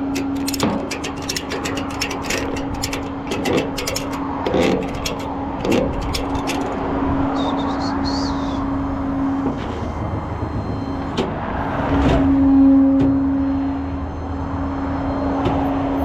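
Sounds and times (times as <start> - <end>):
sharp irregular clicks: 0.0 - 6.9
truck engine hum: 0.0 - 16.0.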